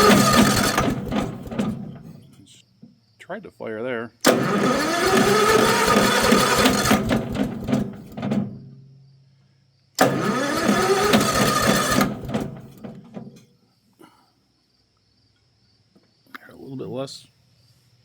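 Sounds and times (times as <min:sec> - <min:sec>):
small engine cranking: 0:00.0 - 0:01.8, 0:04.3 - 0:08.2, 0:10.0 - 0:13.0
electric starter whining: 0:00.0 - 0:02.4, 0:04.2 - 0:08.6, 0:10.0 - 0:13.4.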